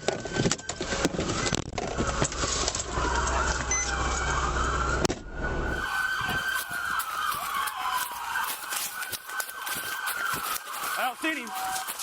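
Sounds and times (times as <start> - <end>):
police siren wailing: 0.2 - 12.0.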